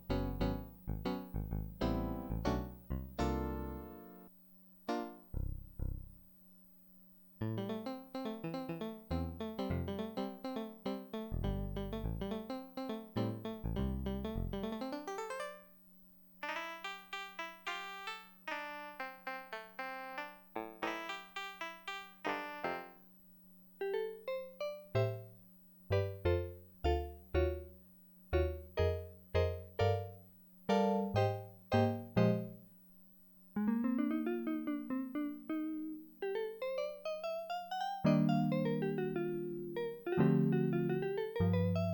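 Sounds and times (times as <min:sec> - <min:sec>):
keyboard playing piano chords: 0:00.0 - 0:04.3, 0:04.9 - 0:06.2, 0:07.4 - 0:15.7, 0:16.4 - 0:23.0, 0:23.8 - 0:32.6, 0:33.6 - 0:41.9
keyboard sliding notes: 0:00.1 - 0:04.2, 0:33.6 - 0:41.9.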